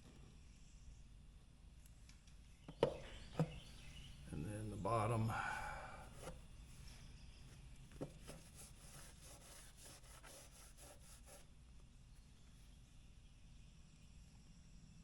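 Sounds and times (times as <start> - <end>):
sealant rubbing on wood: 8.0 - 11.4.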